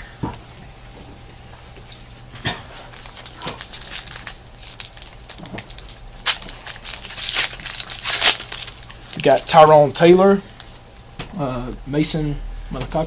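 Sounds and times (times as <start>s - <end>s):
card pack wrappers crinkling: 2.9s - 9.8s.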